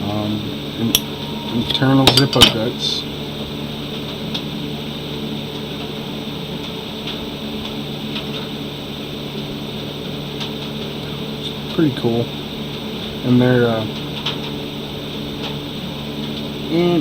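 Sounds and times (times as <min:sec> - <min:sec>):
machine humming: 0:00.0 - 0:17.0.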